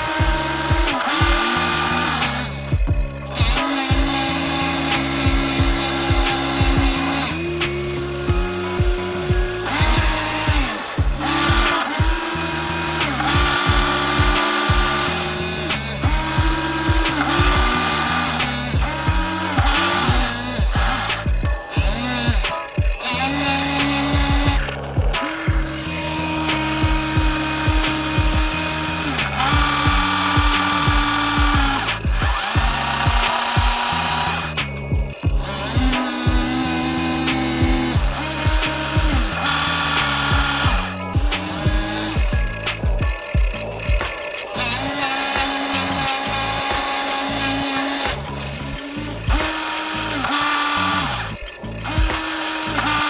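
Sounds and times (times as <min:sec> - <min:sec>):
kick drum: 0:00.0 - 0:01.5, 0:02.6 - 0:12.4, 0:13.2 - 0:15.2, 0:16.0 - 0:23.3, 0:23.9 - 0:25.8, 0:26.6 - 0:28.8, 0:29.4 - 0:34.0, 0:34.8 - 0:44.3, 0:48.1 - 0:49.8, 0:51.4 - 0:53.0
background music: 0:00.0 - 0:53.0
buzzing synth tone: 0:00.0 - 0:53.0
small electric motors whining: 0:00.0 - 0:53.0.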